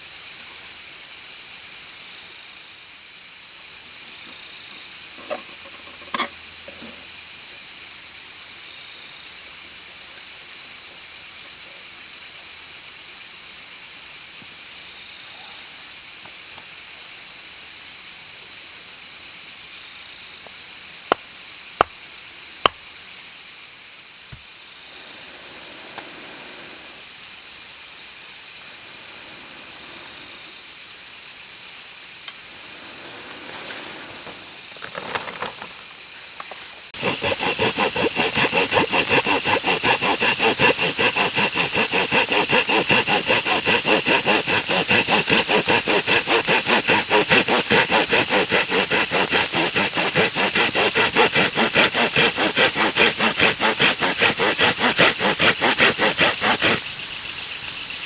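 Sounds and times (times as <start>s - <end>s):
pulsing insect call: 35.8s - 58.0s
high thin insect trill: 56.8s - 58.0s.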